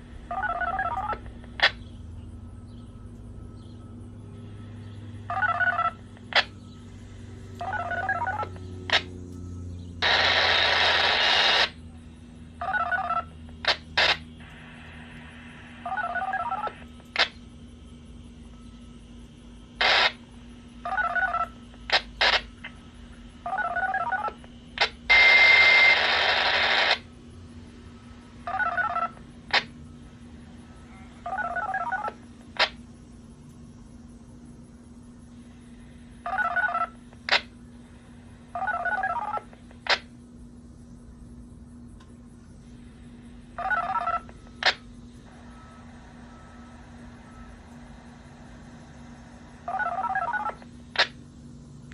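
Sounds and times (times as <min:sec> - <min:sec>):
hissing static: 0:00.0 - 0:02.3, 0:04.4 - 0:17.7, 0:19.0 - 0:41.1, 0:42.0 - 0:51.9
touch-tone beeps: 0:00.1 - 0:11.8
sharp clicks: 0:13.5 - 0:15.1, 0:36.4 - 0:37.6.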